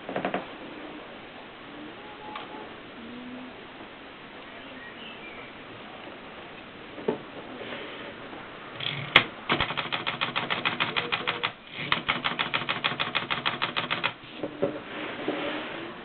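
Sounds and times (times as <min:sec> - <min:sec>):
manual typewriter typing: 0:08.8 - 0:14.2.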